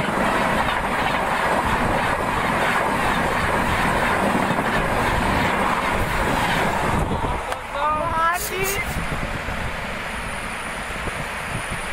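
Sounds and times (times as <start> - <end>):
train passing at speed: 0.0 - 11.9.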